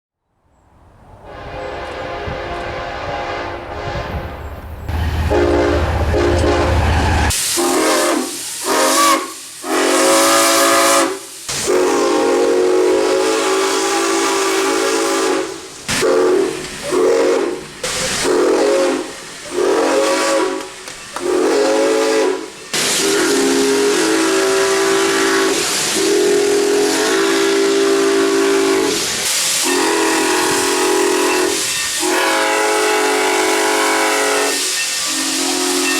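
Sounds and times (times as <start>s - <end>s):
locomotive engine rumble: 1.0s - 7.6s
diesel locomotive air horn: 1.2s - 35.9s
steam locomotive chime whistle: 1.3s - 35.9s
steam hiss: 4.9s - 35.9s.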